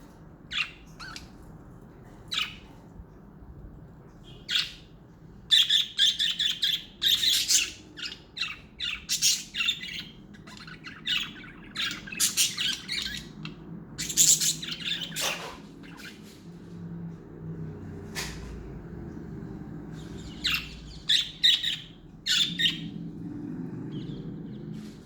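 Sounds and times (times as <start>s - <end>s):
budgerigars chirping and squawking: 0.5s - 1.5s, 2.3s - 2.7s, 4.2s - 4.9s, 5.5s - 16.4s, 19.9s - 23.0s, 23.9s - 24.8s.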